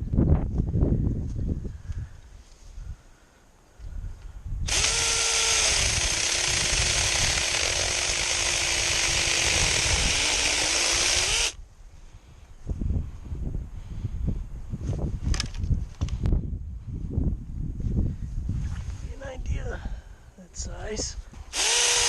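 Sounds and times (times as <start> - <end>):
cordless chainsaw cutting branch: 4.7 - 11.6, 21.5 - 22.0.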